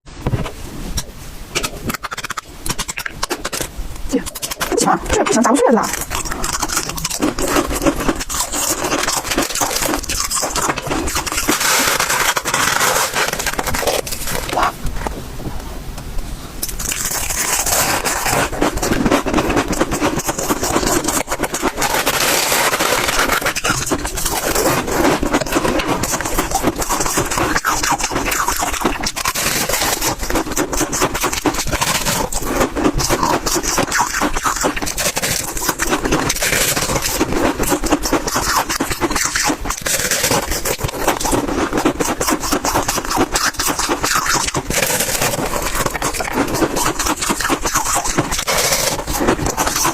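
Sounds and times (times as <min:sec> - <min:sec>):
crunching bites of frost: 0:01.6 - 0:14.8, 0:16.6 - 0:49.9.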